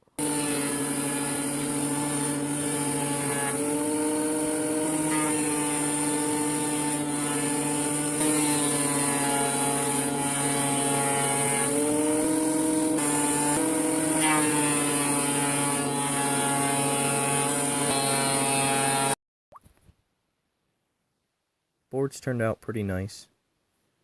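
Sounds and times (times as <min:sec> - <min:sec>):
thickness planer motor whine: 0:00.1 - 0:19.2.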